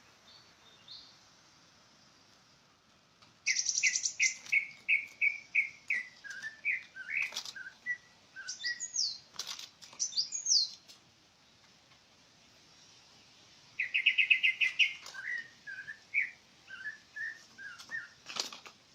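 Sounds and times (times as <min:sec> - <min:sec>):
bird singing: 0:00.0 - 0:01.2, 0:03.4 - 0:10.8, 0:13.8 - 0:18.3.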